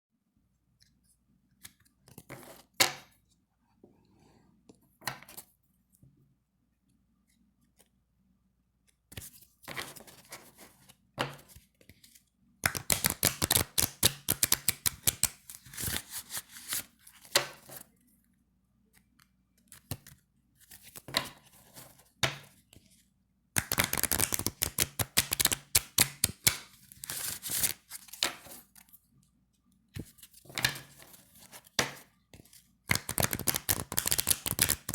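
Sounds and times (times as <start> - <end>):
playing cards being shuffled: 12.6 - 17.8, 23.6 - 28.8, 32.4 - 34.9.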